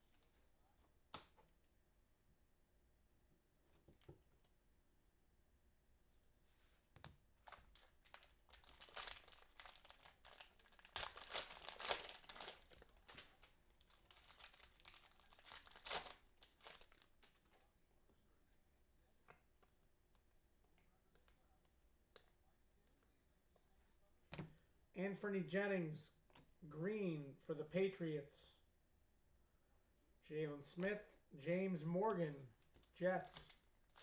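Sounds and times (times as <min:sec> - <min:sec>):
plastic wrapper crinkling: 0:07.4 - 0:17.7, 0:32.6 - 0:34.0.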